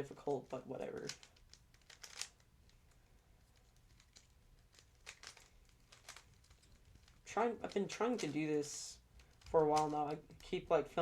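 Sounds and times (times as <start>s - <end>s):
puzzle cube layers clicking: 0.9s - 2.5s, 3.7s - 8.4s, 9.3s - 10.4s.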